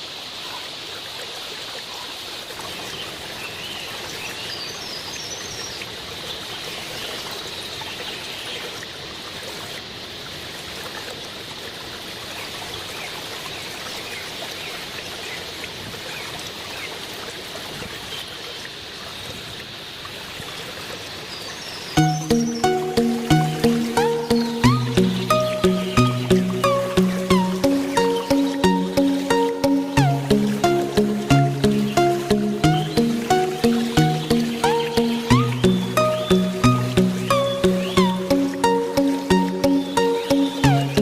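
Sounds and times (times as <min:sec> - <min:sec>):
faint high chirps: 0:22.0 - 0:41.0
waterfall rushing: 0:22.0 - 0:41.0.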